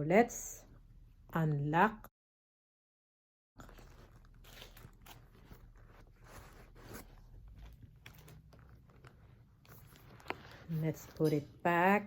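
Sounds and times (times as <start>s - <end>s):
bag rustling and crinkling: 3.6s - 11.2s.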